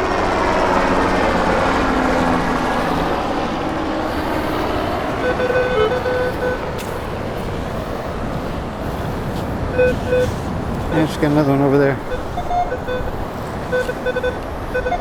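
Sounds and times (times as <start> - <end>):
helicopter drone: 0.0 - 15.0
steady rushing noise: 1.3 - 15.0
metal detector short beeps: 5.2 - 6.9, 9.7 - 10.3, 12.0 - 15.0.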